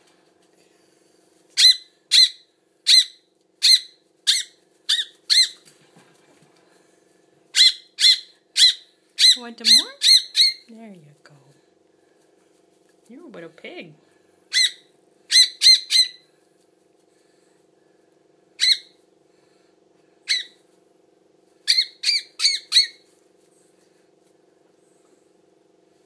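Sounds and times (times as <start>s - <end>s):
baby bird begging squawks: 1.6s - 5.6s, 7.6s - 10.7s, 14.5s - 16.2s, 18.6s - 19.0s, 20.3s - 20.6s, 21.7s - 23.0s.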